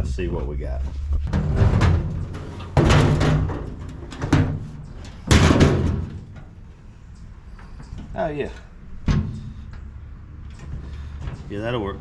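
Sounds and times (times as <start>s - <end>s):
toolbox hollow clunks and bangs: 1.3s - 6.5s, 9.0s - 9.6s.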